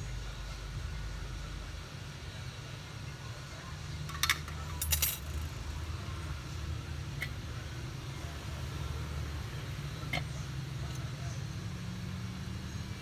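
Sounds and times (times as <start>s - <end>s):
small metal tools clinking: 4.1s - 5.6s.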